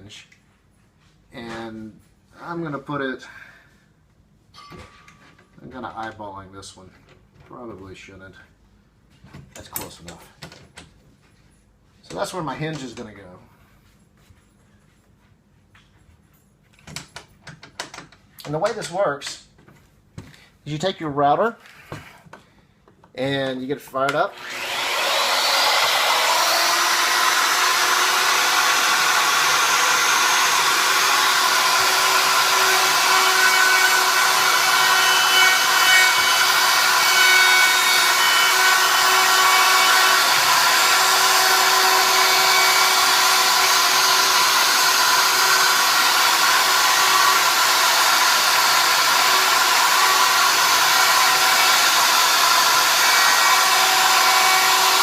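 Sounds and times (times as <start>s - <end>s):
electric router whining: 24.3s - 55.0s.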